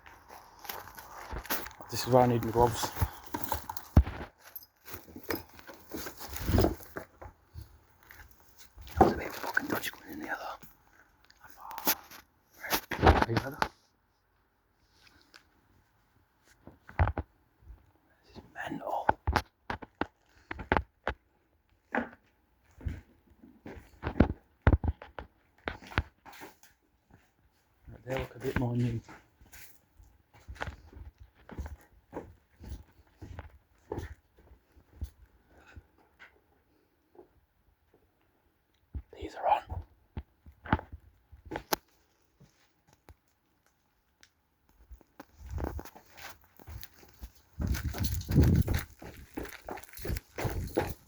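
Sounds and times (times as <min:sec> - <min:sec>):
footsteps: 0:00.0 - 0:10.3, 0:44.8 - 0:51.0
rustling: 0:00.0 - 0:10.3, 0:45.0 - 0:51.0.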